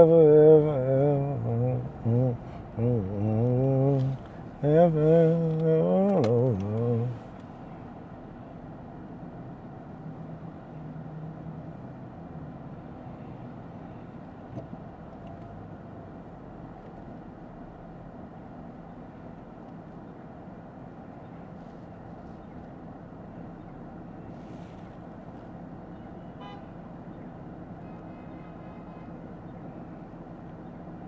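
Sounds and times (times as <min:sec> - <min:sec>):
road and engine noise in car: 0:00.0 - 0:31.0
car horn toot: 0:26.0 - 0:26.9, 0:27.8 - 0:29.3.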